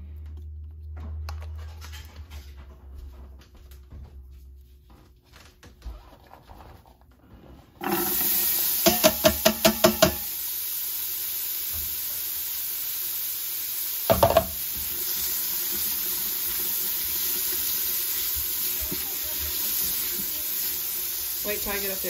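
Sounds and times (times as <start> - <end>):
vegetables sizzling in oil: 7.8 - 22.0.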